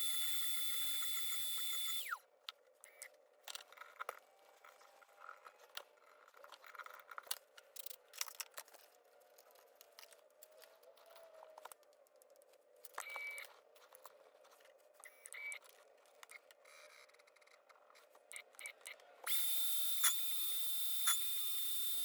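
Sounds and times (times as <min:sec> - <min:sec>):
milling spindle whining: 0:00.0 - 0:02.2, 0:19.3 - 0:22.0
light clicks and scrapes: 0:02.9 - 0:19.0.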